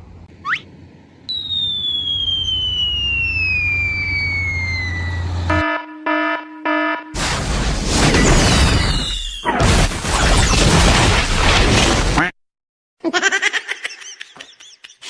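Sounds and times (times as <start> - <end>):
low hum: 0.0 - 6.7
quick rising whistle: 0.4 - 0.7, 1.3 - 5.6
long falling whistle: 1.3 - 7.1
loud explosion: 7.2 - 12.1.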